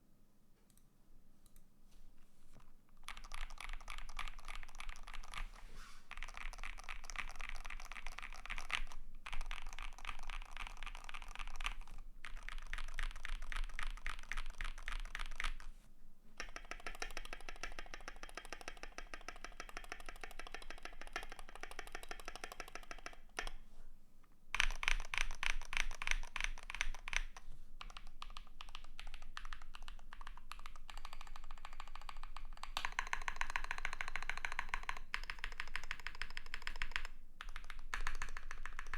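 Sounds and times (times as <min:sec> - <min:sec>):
fast typing on mechanical keyboard: 0:03.0 - 0:05.5, 0:06.1 - 0:15.7, 0:16.4 - 0:23.5, 0:24.6 - 0:38.9.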